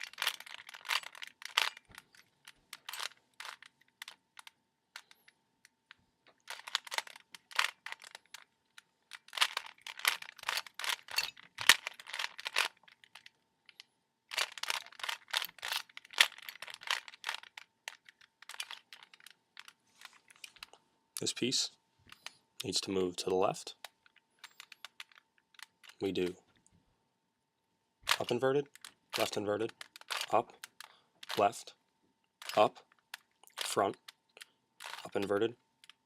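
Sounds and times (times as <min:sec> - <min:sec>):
plastic puzzle cube clicking: 0:00.0 - 0:05.2, 0:06.3 - 0:08.5, 0:09.1 - 0:13.3, 0:14.3 - 0:20.7, 0:23.8 - 0:26.0, 0:28.1 - 0:31.5, 0:32.4 - 0:36.0.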